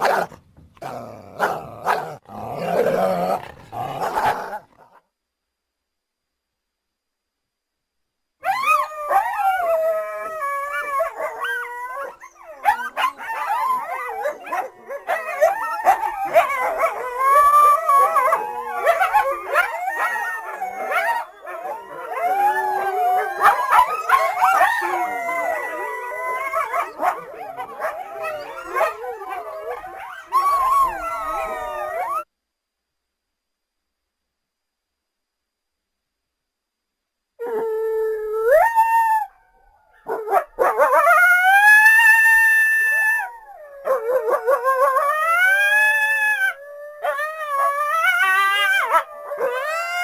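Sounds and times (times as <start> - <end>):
coyotes yipping and howling: 8.4 - 32.3, 38.2 - 50.0.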